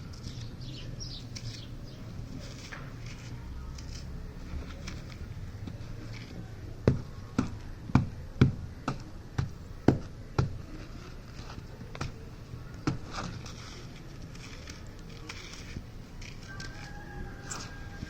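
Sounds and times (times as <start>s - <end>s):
hard sand cement cracking: 9.6s - 18.0s.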